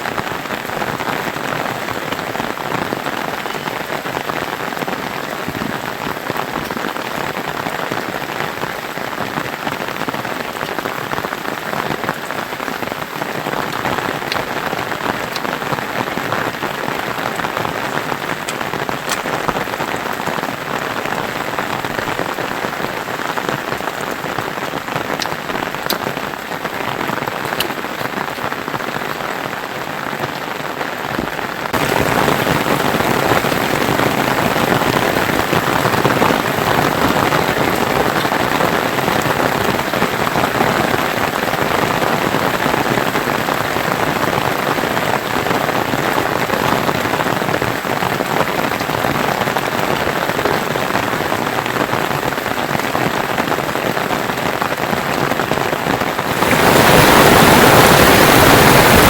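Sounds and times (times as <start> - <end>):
steady rain: 0.0 - 59.0
water drips ticking: 13.6 - 15.8, 18.4 - 20.2, 25.0 - 28.4.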